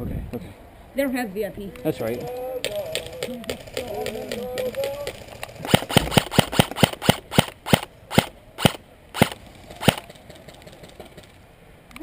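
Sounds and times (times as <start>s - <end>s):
airsoft gun shots: 5.6s - 10.1s.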